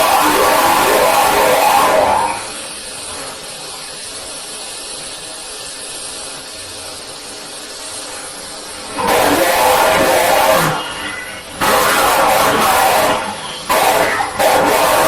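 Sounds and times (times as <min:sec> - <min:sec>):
steady background hiss: 0:00.0 - 0:15.0
person yelling angrily: 0:09.0 - 0:10.8.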